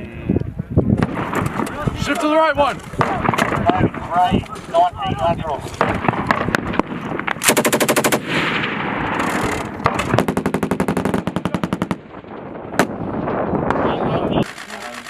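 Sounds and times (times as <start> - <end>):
machine gun bursts: 7.4 - 8.2, 14.4 - 15.0.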